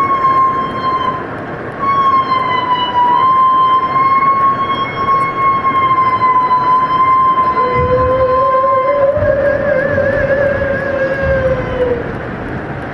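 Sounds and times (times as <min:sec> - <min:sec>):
constant hiss: 0:00.0 - 0:12.9
whale song moan: 0:04.5 - 0:12.2.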